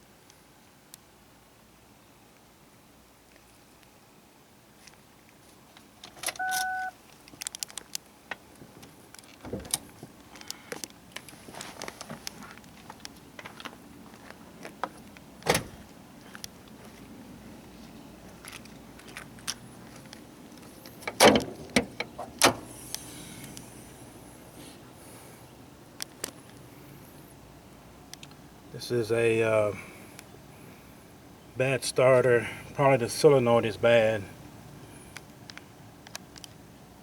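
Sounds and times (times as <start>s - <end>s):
car keys jangling: 6.0s - 7.8s
short electronic beep: 6.4s - 7.0s.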